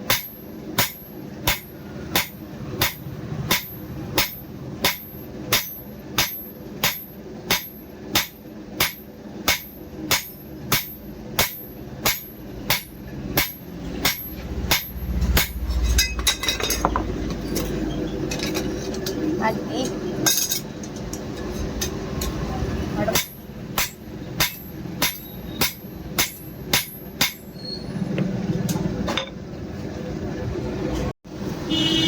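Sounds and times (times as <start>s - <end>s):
hammer striking steel on anvil: 0.0s - 17.7s, 20.2s - 27.6s.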